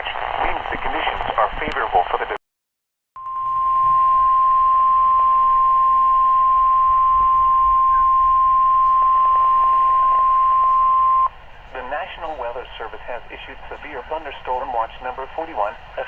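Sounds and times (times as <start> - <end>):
faint radio hiss: 0.0 - 2.4, 10.6 - 16.0
high warning alarm tone: 3.2 - 11.3.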